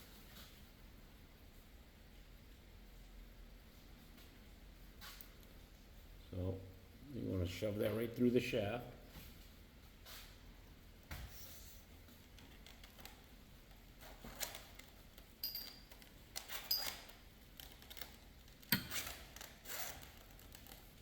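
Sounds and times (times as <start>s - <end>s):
metal parts clicking and scraping: 14.0s - 20.9s.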